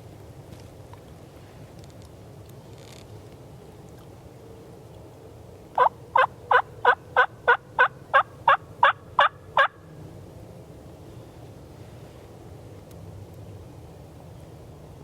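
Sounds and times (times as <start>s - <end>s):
turkey yelps: 5.8s - 9.8s.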